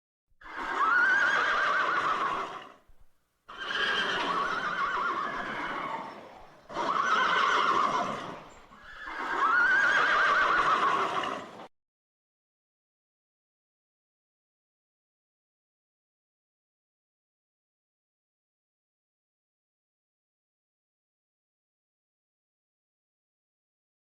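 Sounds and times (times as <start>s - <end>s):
horses whinnying: 0.4s - 2.9s, 3.5s - 11.7s.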